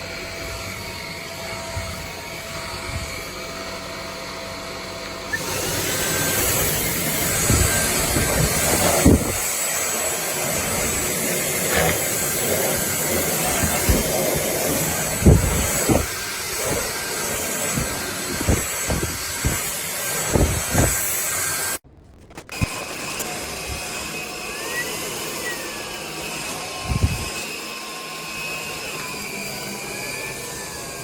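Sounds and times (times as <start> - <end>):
vacuum cleaner hissing: 0.0 - 21.8, 22.5 - 31.0
low thumps and knocks: 17.7 - 21.0.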